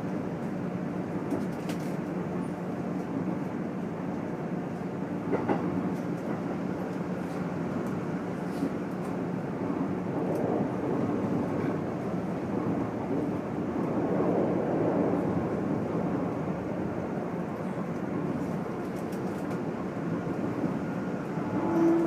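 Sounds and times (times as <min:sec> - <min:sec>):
train wheels rumbling on rail: 0:00.0 - 0:22.0.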